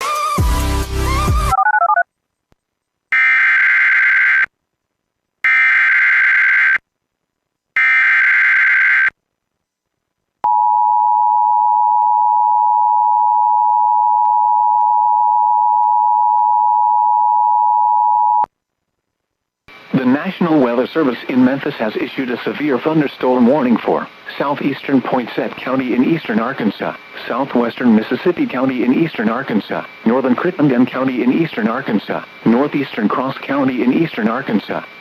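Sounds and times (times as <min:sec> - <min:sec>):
music: 0:00.0 - 0:01.6.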